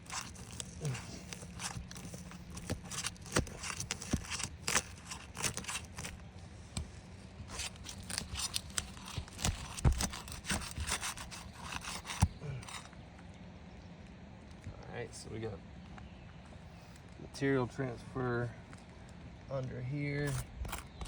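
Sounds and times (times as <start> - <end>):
shingle seal strip tearing loose: 0.0 - 6.9, 7.5 - 12.9, 20.3 - 21.0.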